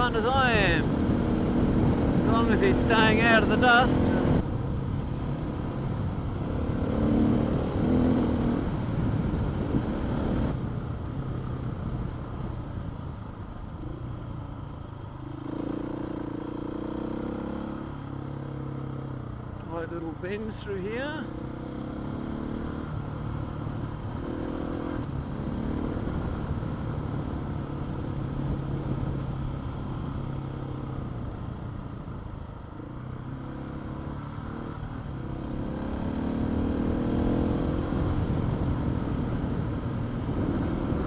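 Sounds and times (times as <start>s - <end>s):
motorcycle engine revving: 0.0s - 4.5s, 5.4s - 10.6s, 15.2s - 19.6s, 21.1s - 31.1s, 33.0s - 41.0s
low rumble of wind and tyres: 0.0s - 41.0s.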